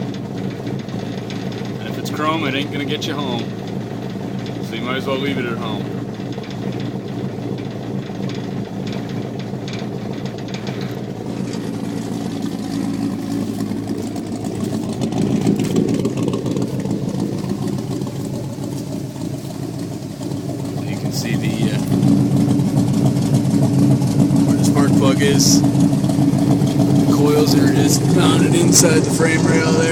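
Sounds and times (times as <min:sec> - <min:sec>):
truck engine idling: 0:00.0 - 0:29.9.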